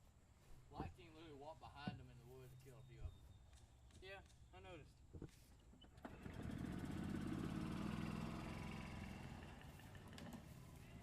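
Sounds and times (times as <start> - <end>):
vehicle engine running: 6.1 - 11.0.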